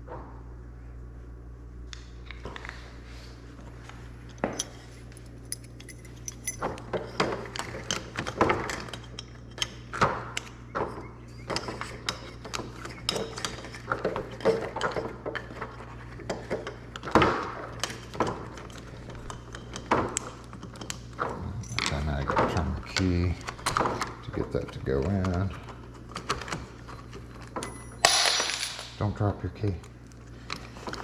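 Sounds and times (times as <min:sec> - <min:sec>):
steady low hum: 0:00.0 - 0:31.0
keys and lock parts clinking: 0:04.2 - 0:09.8, 0:17.8 - 0:29.0.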